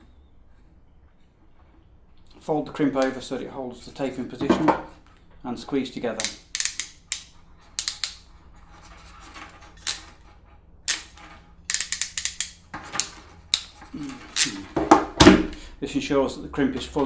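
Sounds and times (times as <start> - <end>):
crimp tool clicking: 6.2 - 8.2, 11.7 - 13.8.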